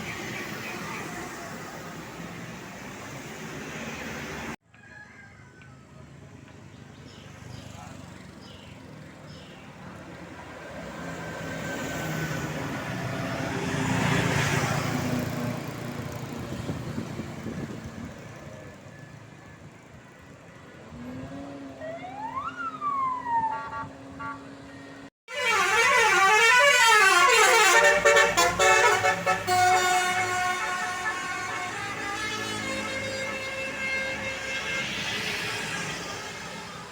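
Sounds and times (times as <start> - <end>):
bus passing: 0.0 - 4.6, 6.2 - 36.9
musical air horn melody: 25.3 - 36.9.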